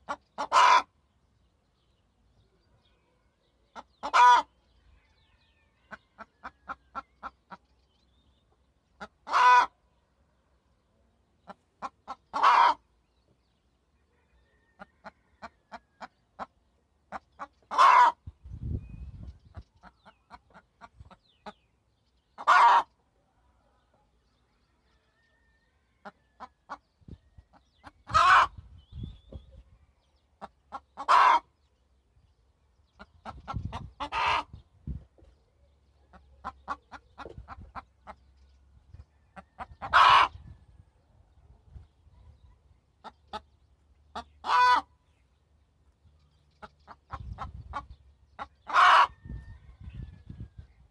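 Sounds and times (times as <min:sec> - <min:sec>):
hen clucking and squawking: 0:00.0 - 0:01.0, 0:03.6 - 0:04.7, 0:05.7 - 0:07.7, 0:08.9 - 0:09.8, 0:11.4 - 0:12.9, 0:14.1 - 0:21.7, 0:22.4 - 0:23.0, 0:25.3 - 0:29.8, 0:30.4 - 0:31.7, 0:32.9 - 0:35.3, 0:36.0 - 0:40.9, 0:41.7 - 0:45.2, 0:46.5 - 0:50.9.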